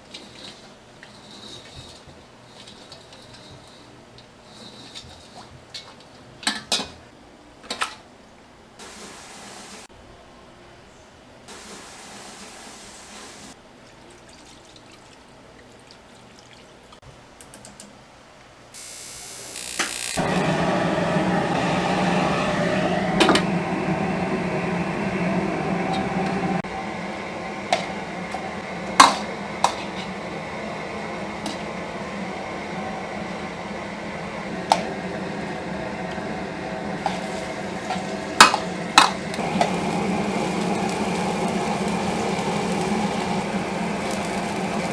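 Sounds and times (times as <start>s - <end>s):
utensils clinking on cookware: 37.0s - 44.9s.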